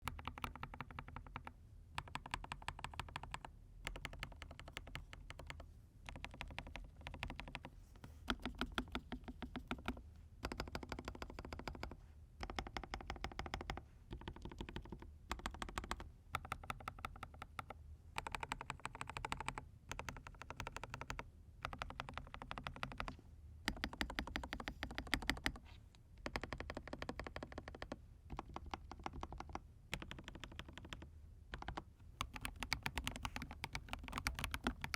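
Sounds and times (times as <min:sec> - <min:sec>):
mechanical keyboard typing: 0:00.0 - 0:07.7, 0:08.3 - 0:25.6, 0:26.2 - 0:34.9.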